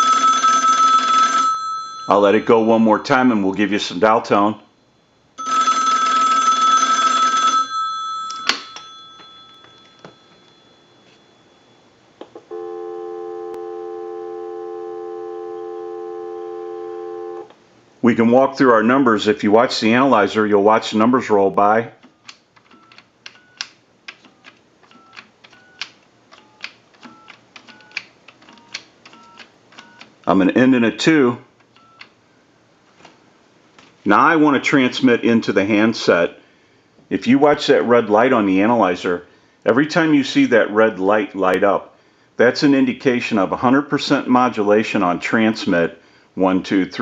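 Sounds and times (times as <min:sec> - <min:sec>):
dial tone: 0:00.0 - 0:01.6, 0:05.4 - 0:08.5, 0:12.5 - 0:17.5
payphone bell ringing: 0:00.0 - 0:02.7, 0:05.4 - 0:11.9.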